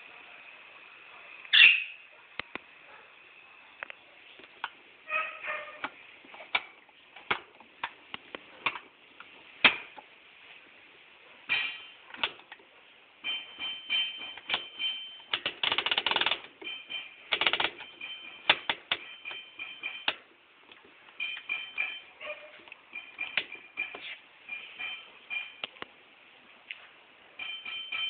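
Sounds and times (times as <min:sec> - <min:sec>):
washing machine controls clicking: 0:13.3 - 0:20.2.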